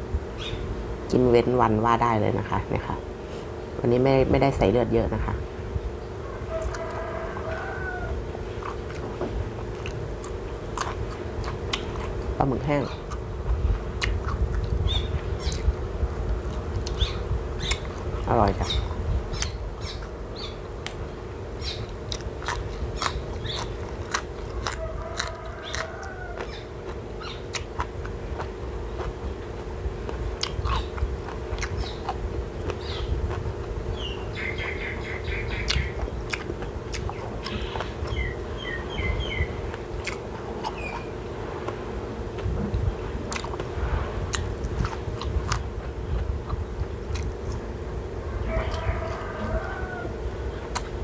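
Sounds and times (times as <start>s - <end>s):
small birds chirping: 0.4s - 0.7s, 14.8s - 15.7s, 16.8s - 20.7s, 21.6s - 27.8s, 30.4s - 33.3s, 33.9s - 41.2s
person chewing crunchy food: 6.5s - 47.7s, 48.4s - 51.0s.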